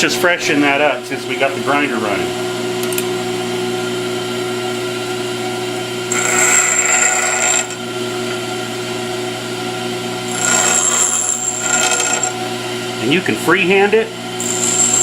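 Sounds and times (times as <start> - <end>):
grinder motor hum: 4.7 - 9.0, 10.1 - 13.1, 14.3 - 15.0
high-pitched metal grinding: 6.1 - 7.9, 10.3 - 12.5, 14.4 - 15.0.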